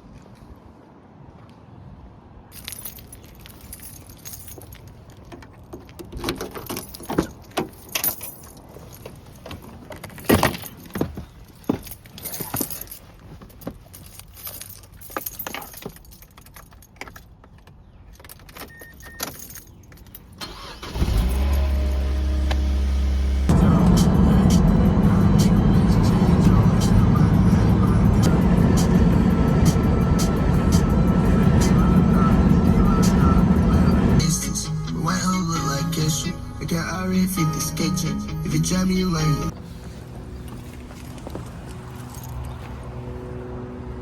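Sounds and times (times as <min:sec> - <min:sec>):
keys jangling: 0:02.5 - 0:21.4, 0:41.0 - 0:42.7
loud low hum: 0:21.4 - 0:41.1.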